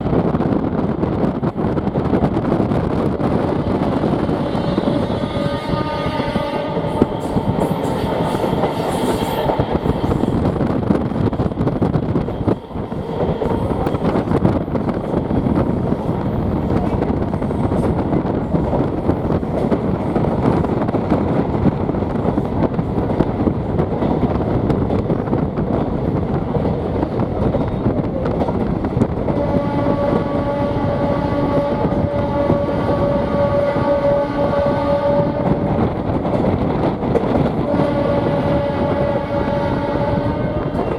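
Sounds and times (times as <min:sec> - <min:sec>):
train rumbling on track: 0:00.0 - 0:40.9
train horn blasts: 0:03.8 - 0:10.4, 0:29.3 - 0:35.8, 0:37.5 - 0:40.9.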